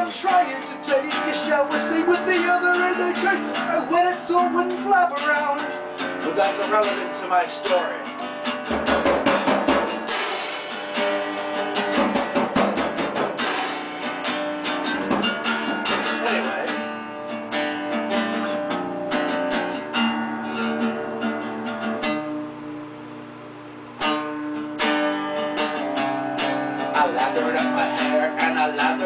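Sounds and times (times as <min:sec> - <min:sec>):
guitar strumming chords: 0:00.0 - 0:29.0.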